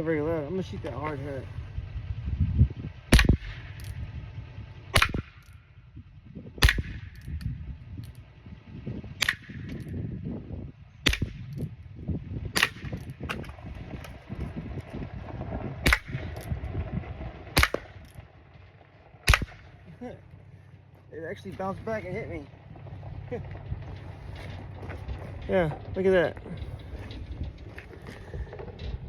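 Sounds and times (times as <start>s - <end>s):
quiet revolver shots: 3.1s - 4.0s, 6.6s - 7.3s, 9.2s - 9.8s, 11.0s - 11.7s, 12.6s - 13.4s, 15.8s - 16.5s, 17.6s - 18.0s, 19.3s - 19.8s.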